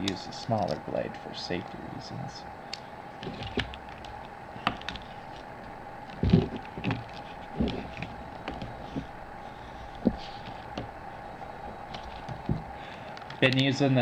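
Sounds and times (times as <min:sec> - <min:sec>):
handling clicks and knocks: 0:00.0 - 0:01.8, 0:02.7 - 0:13.7
steady background hum: 0:00.0 - 0:14.0
loud thumps: 0:06.0 - 0:12.8.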